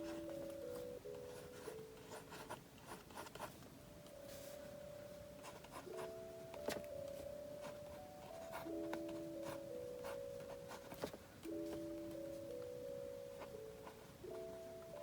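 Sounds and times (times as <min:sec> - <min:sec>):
soft background music: 0:00.0 - 0:15.0.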